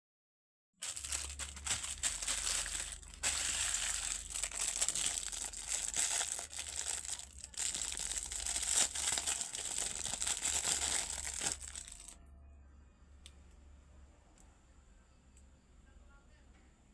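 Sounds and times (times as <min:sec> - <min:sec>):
packaging crinkling and tearing: 0:00.8 - 0:12.2.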